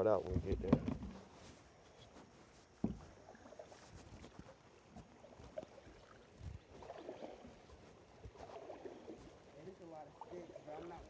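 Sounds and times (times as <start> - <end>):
kayak paddle splashing water: 2.8 - 11.0.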